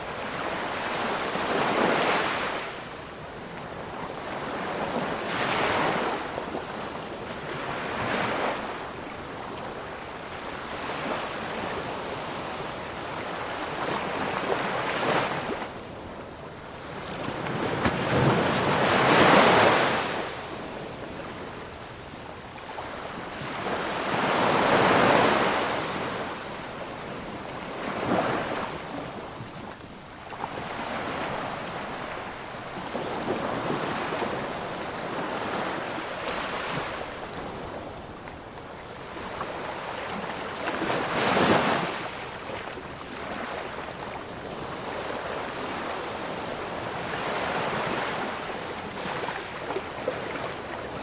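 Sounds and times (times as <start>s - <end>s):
ocean waves breaking: 16.8s - 51.0s.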